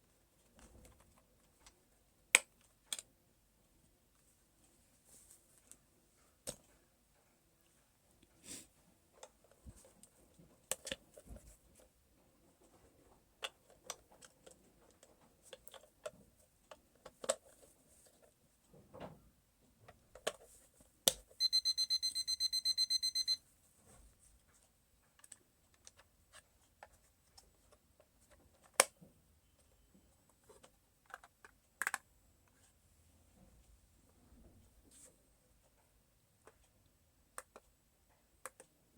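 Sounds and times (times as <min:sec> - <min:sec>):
alarm clock button clicks: 0:21.4 - 0:23.4.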